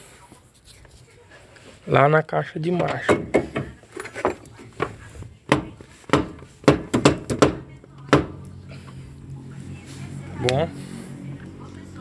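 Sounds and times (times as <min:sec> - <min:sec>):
sharp metal knocks: 0:02.8 - 0:03.8, 0:05.5 - 0:08.4.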